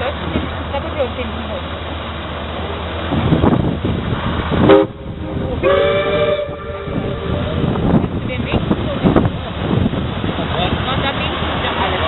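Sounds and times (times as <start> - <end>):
river traffic running noise: 0.0 - 12.0
ship's whistle blasts: 5.6 - 7.3.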